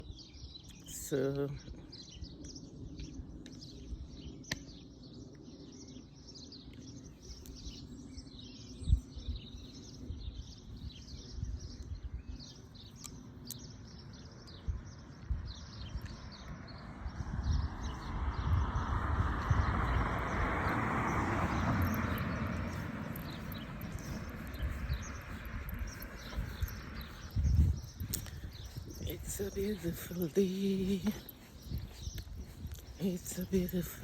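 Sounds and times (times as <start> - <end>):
songbirds chirping and singing: 0.0 - 34.0
passing vehicle rushing: 16.6 - 27.4.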